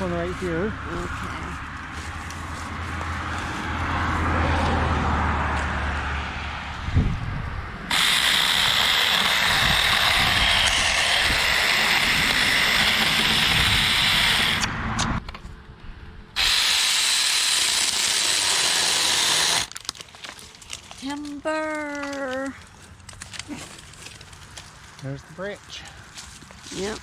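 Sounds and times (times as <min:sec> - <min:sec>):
electric chainsaw cutting branch: 0:07.9 - 0:15.2, 0:16.4 - 0:19.8.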